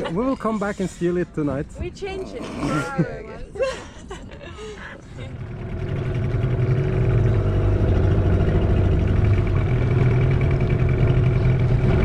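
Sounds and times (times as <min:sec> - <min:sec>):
outboard motor running: 0:05.2 - 0:12.0.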